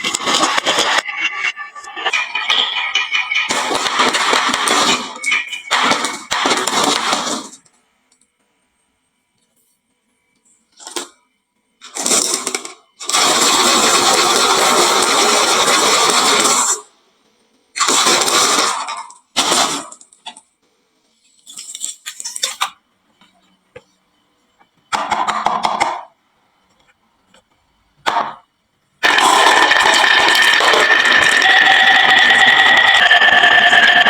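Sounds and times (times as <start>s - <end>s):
marbles rolling on wood: 0.0s - 7.4s, 29.0s - 34.0s
marbles dropping into toy trucks: 29.1s - 34.0s.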